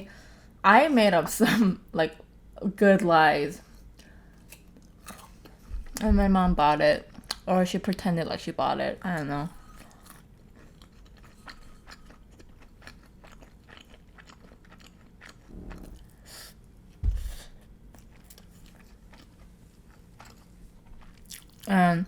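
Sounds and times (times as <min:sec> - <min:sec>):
crunchy chewing: 0:04.0 - 0:05.7, 0:09.6 - 0:16.3, 0:17.9 - 0:21.7
dull thump: 0:17.0 - 0:17.4.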